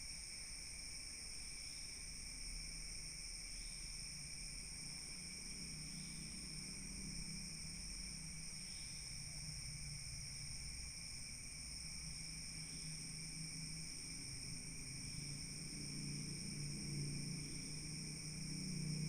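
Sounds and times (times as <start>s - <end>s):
night insects chirring: 0.0s - 19.0s.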